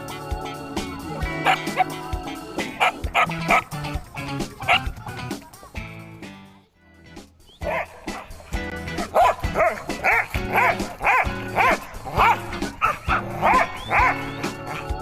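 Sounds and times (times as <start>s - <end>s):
background music: 0.0s - 15.0s
dog barking: 1.4s - 2.0s, 2.8s - 3.8s, 4.6s - 4.9s, 7.6s - 8.4s, 9.0s - 15.0s.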